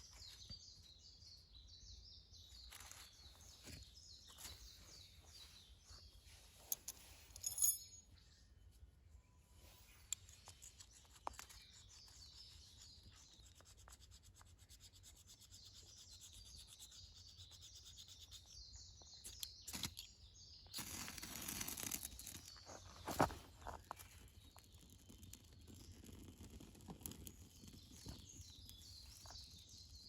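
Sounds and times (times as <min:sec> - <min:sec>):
scraping and rasping: 0:20.8 - 0:29.4.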